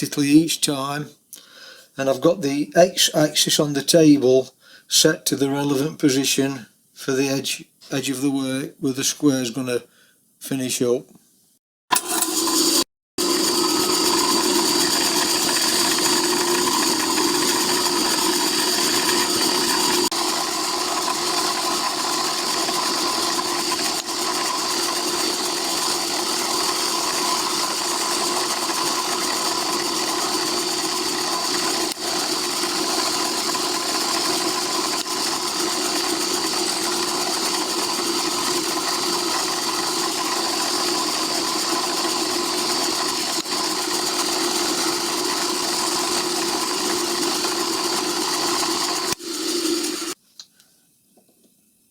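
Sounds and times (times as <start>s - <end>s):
milling machine whining: 11.9s - 50.2s.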